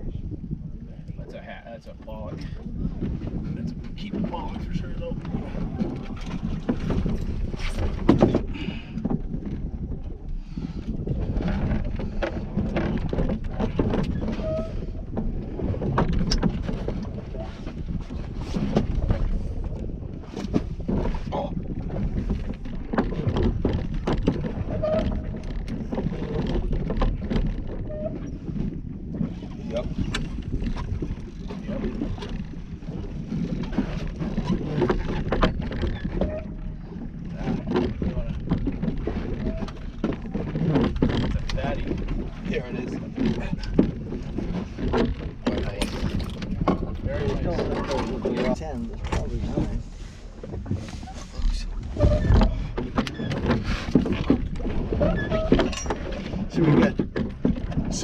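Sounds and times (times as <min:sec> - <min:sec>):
low rumble: 0:00.0 - 0:58.0
wind buffeting microphone: 0:00.0 - 0:58.0
knocks and clatter on deck: 0:05.3 - 0:09.7, 0:20.4 - 0:28.0, 0:43.1 - 0:49.7
gear clattering on deck: 0:33.4 - 0:49.7, 0:51.4 - 0:58.0.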